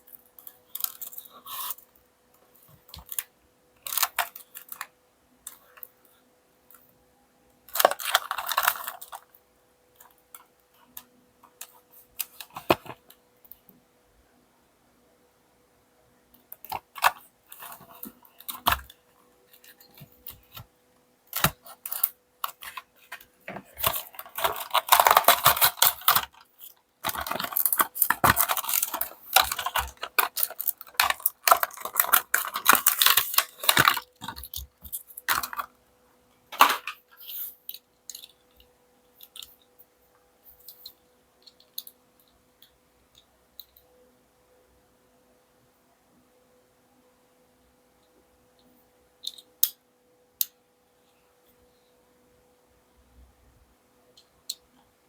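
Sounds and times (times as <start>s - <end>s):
faint steady hum: 0.0s - 55.0s
packaging rustling and crinkling: 7.7s - 9.3s, 16.7s - 18.9s, 21.3s - 35.7s.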